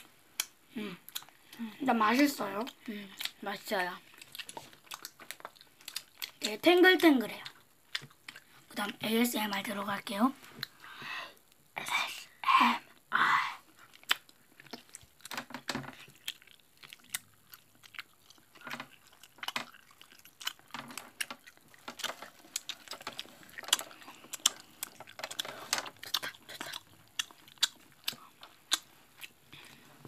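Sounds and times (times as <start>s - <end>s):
wet mouth clicks and smacks: 13.9s - 29.4s.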